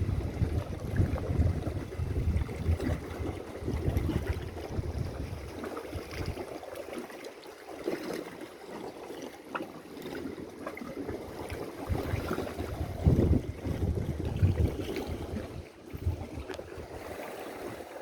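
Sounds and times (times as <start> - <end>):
wind buffeting microphone: 0.0 - 6.4, 11.8 - 17.8
sea water lapping against rocks: 0.0 - 18.0.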